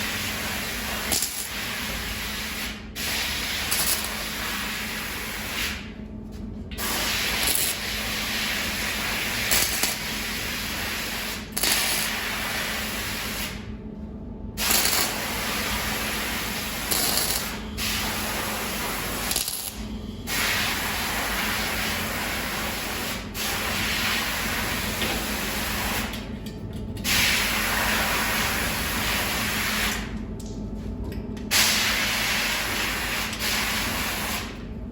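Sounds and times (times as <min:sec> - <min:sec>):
welding arc crackling and hissing: 0:00.0 - 0:05.9, 0:06.8 - 0:13.6, 0:14.6 - 0:26.1, 0:31.6 - 0:34.5
welding machine low hum: 0:00.0 - 0:34.9.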